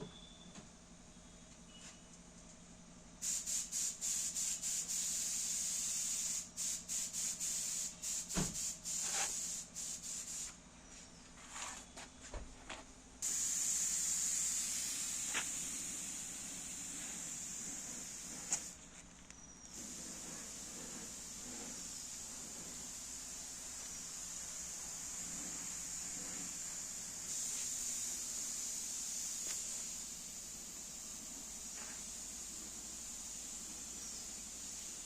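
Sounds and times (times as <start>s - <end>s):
spray gun hissing: 3.2s - 10.6s, 13.2s - 18.8s, 19.7s - 35.0s.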